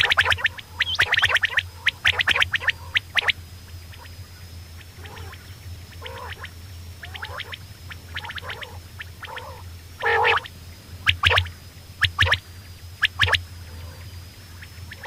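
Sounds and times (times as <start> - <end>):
quail calling: 0.0 - 3.3, 4.8 - 12.4
steady low hum: 0.0 - 15.0.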